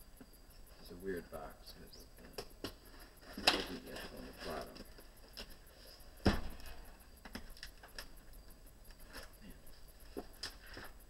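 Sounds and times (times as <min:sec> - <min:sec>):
knock on cardboard box: 0:06.2 - 0:06.6.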